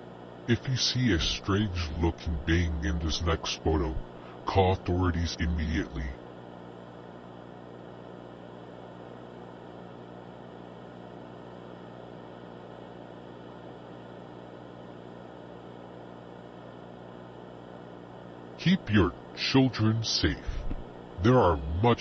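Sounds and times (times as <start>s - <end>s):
steady static hiss: 0.0s - 7.2s, 15.1s - 22.0s
low electrical hum: 0.0s - 22.0s.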